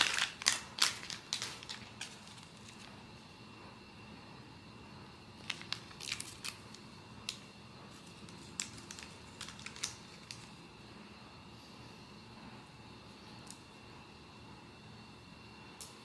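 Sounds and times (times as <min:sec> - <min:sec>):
plastic and cardboard packaging crinkles: 0:00.0 - 0:02.9, 0:05.4 - 0:10.6.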